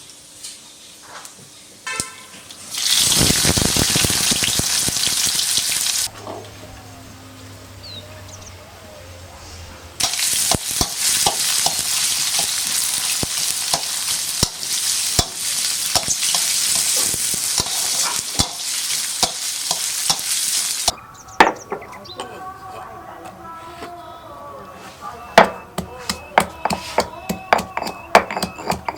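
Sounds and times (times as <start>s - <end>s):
food sizzling in hot oil: 2.6s - 6.1s, 10.0s - 20.9s
spatula scraping a pan: 10.0s - 20.6s, 25.8s - 28.9s.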